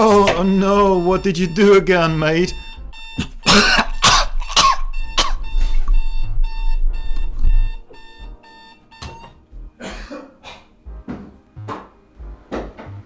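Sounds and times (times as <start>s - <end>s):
alarm clock beeping: 0.0s - 9.8s.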